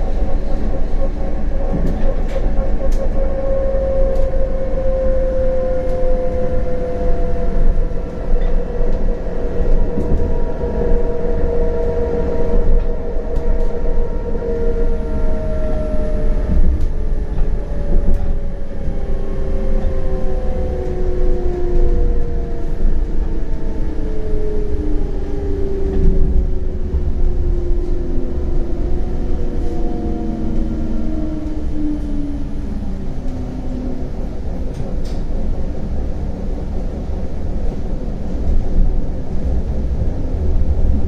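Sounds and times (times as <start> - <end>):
tram motor electric whine: 0.0 - 41.0
wheels rumbling on rail: 0.0 - 41.0.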